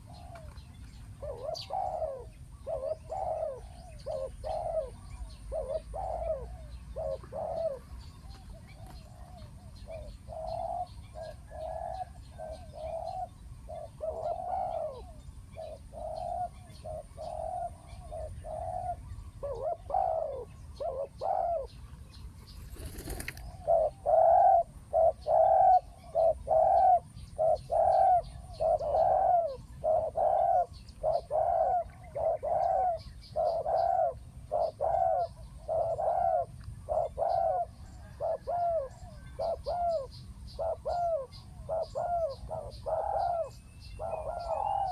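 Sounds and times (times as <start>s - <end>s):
doves cooing: 0.0s - 21.8s, 22.4s - 44.9s
small birds chirping: 0.0s - 44.9s.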